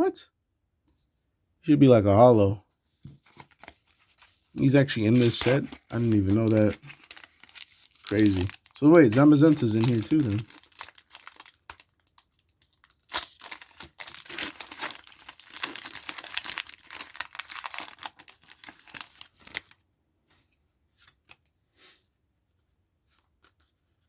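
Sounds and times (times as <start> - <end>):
foil wrapper crinkling and tearing: 3.2 - 19.8.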